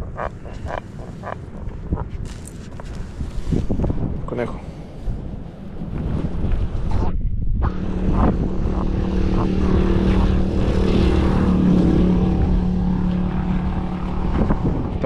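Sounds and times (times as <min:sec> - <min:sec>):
motor engine running: 0:07.6 - 0:15.0.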